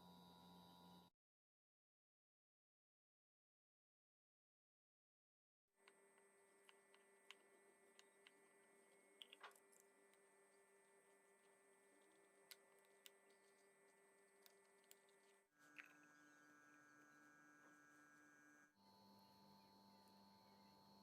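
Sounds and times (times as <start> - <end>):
faint electrical hum: 5.8 - 18.0.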